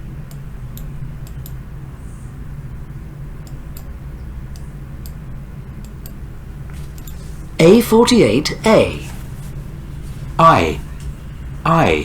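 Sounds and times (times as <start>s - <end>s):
faint short clicks: 0.3s - 1.6s.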